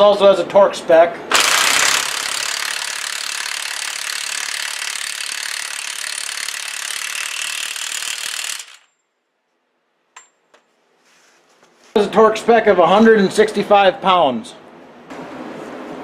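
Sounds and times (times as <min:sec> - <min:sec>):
impact wrench hammering: 0:01.3 - 0:08.9.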